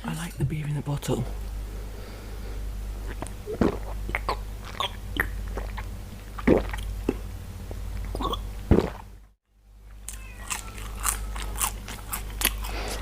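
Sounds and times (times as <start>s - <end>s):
steady low hum: 0.0s - 13.0s
pizza being chewed: 9.9s - 13.0s.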